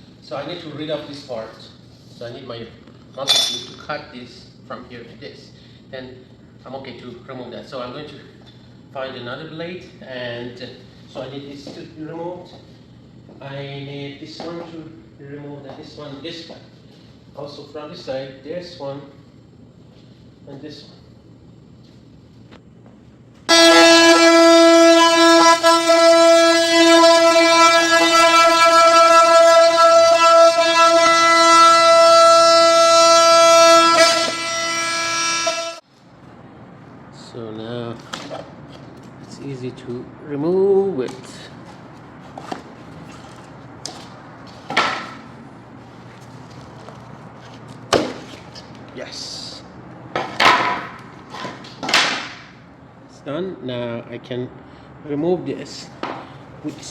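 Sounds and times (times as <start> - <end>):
multi-tool buzzing through wood: 23.5 - 35.8
plank knocking and scraping: 44.6 - 45.2.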